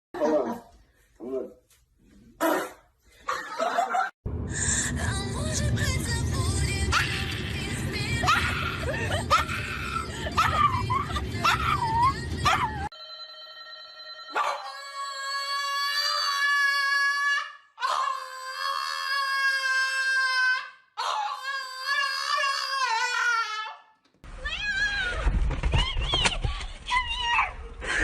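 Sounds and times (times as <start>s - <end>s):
low rumbling noise: 4.3s - 12.9s.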